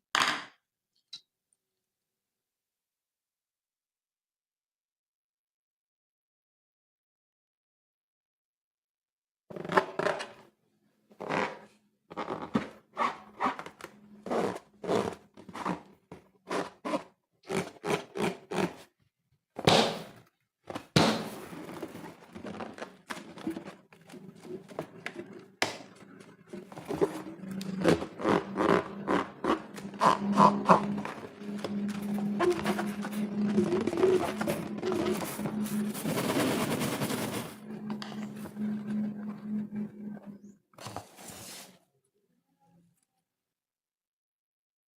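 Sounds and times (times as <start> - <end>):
steady low hum: 26.0 - 40.6.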